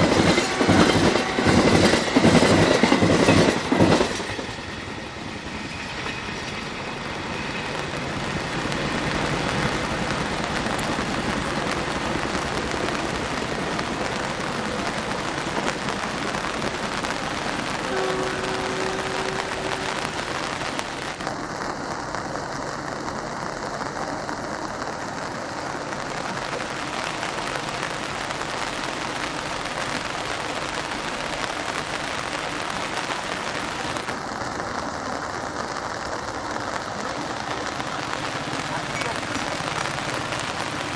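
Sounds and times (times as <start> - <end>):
heavy rain pouring: 0.0 - 40.9
train horn: 17.8 - 20.2.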